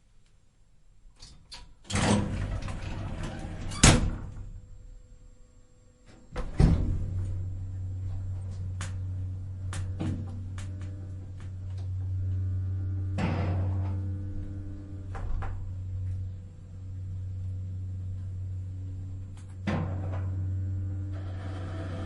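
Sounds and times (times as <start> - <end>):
elevator doors sliding shut: 1.9 - 4.4, 21.1 - 22.0
elevator hum: 6.3 - 22.0.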